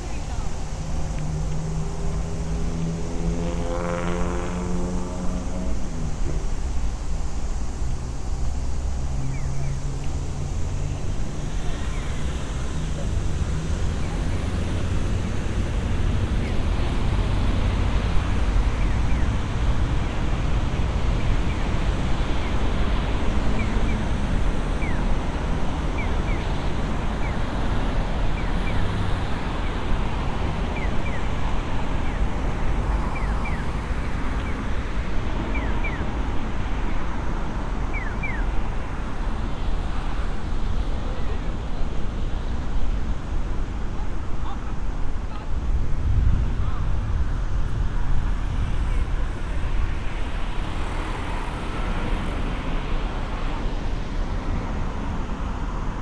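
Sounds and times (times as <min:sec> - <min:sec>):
traffic rumble: 0:00.0 - 0:56.0
wind noise: 0:36.1 - 0:56.0.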